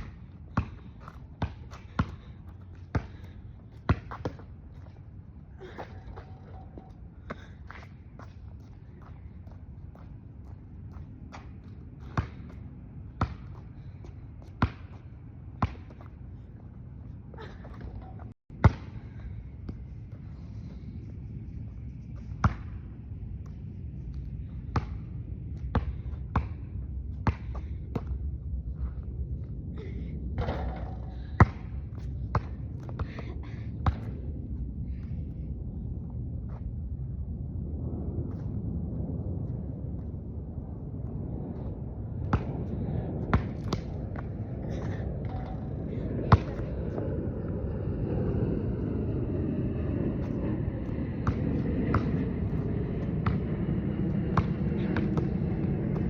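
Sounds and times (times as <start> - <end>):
basketball bouncing on hard court: 0.0 - 4.9, 10.9 - 12.6, 13.2 - 13.6, 14.4 - 15.0, 15.6 - 16.1, 17.6 - 19.0, 54.3 - 55.4
low rumble: 0.0 - 56.0.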